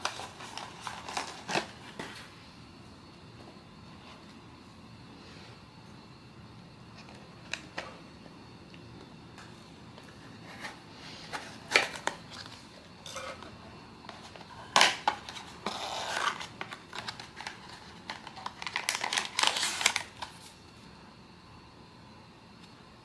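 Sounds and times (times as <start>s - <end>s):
packaging crinkling and tearing: 0.0s - 2.2s, 14.2s - 20.6s.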